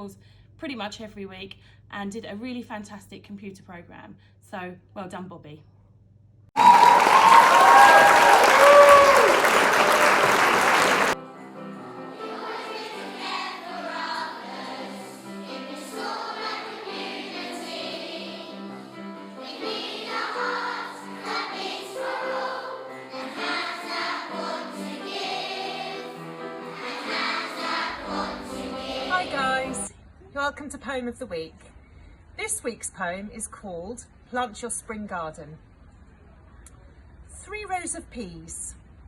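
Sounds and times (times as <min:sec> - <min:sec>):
applause: 0:06.6 - 0:11.2
choir singing: 0:06.6 - 0:29.9.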